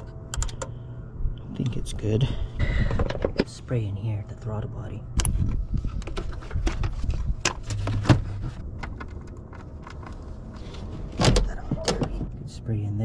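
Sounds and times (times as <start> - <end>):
low rumble: 0.0 - 13.0
parts clattering at engine: 2.8 - 3.6.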